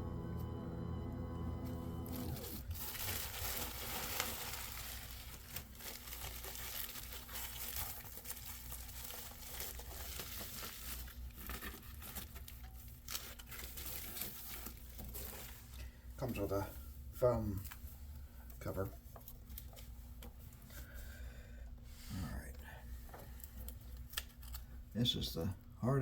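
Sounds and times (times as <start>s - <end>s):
packaging crinkling and rustling: 2.1s - 16.7s, 17.4s - 20.9s, 23.0s - 24.9s.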